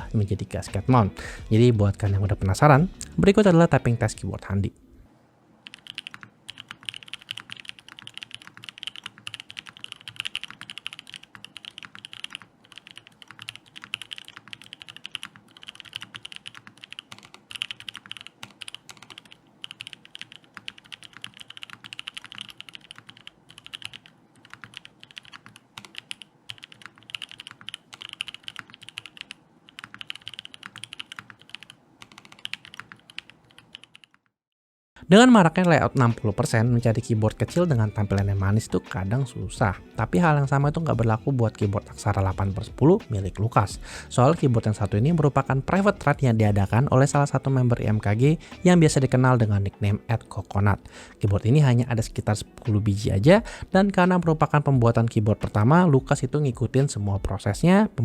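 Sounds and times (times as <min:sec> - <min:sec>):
mechanical keyboard typing: 0:05.6 - 0:34.3.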